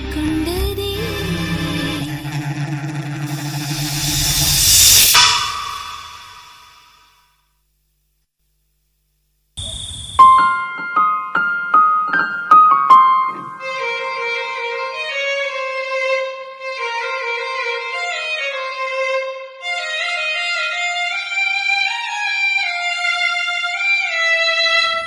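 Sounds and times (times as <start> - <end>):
violins playing slow melody: 0.0 - 4.1
burst of hiss: 3.3 - 7.1
piano notes: 10.2 - 13.8.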